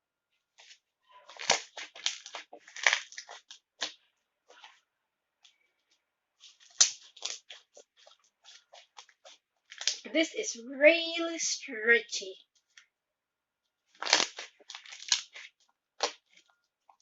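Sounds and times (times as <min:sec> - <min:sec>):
slime crackling pops: 0:06.6 - 0:07.6, 0:14.0 - 0:15.4.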